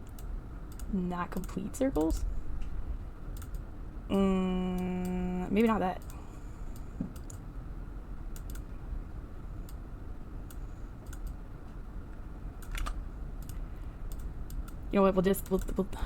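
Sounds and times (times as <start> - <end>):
keyboard and mouse clicks: 0.0 - 2.3, 3.3 - 3.7, 7.1 - 7.4, 8.3 - 8.7, 10.5 - 11.4, 12.6 - 14.8
low background hum: 0.0 - 16.0.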